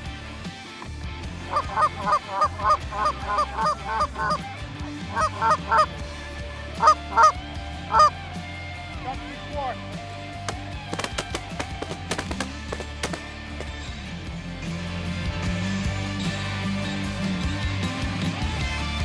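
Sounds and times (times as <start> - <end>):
goose honking: 1.5 - 4.5, 5.1 - 6.0, 6.8 - 8.1.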